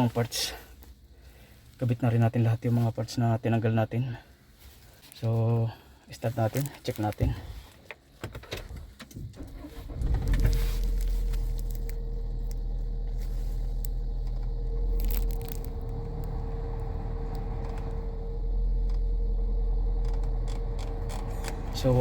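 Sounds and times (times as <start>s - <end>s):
car engine starting and idling: 8.4s - 22.0s
steady hum: 9.9s - 22.0s.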